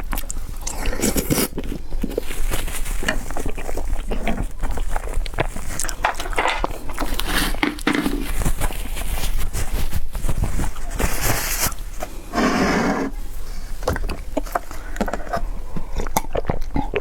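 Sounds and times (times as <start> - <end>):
chewing with mouth noises: 0.0 - 12.2, 13.2 - 17.0.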